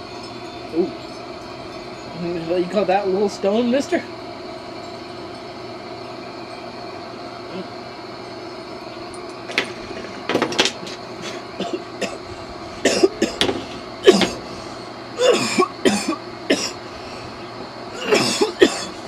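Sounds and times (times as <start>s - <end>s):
person coughing harshly: 12.8s - 14.5s, 15.2s - 16.8s, 18.0s - 19.0s.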